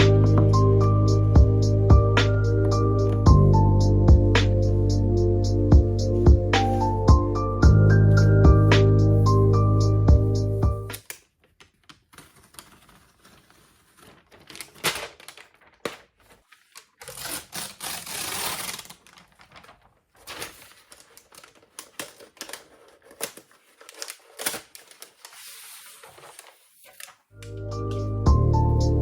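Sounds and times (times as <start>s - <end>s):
rustling scrape: 12.2s - 14.6s, 25.2s - 27.1s.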